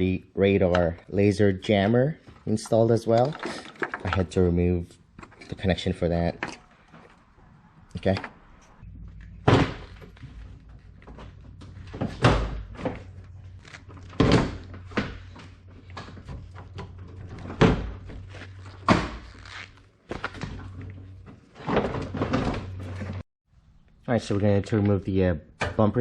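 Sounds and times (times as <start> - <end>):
car parts and tools clunking: 3.1 - 19.4, 20.1 - 23.2
steady low hum: 8.6 - 14.0.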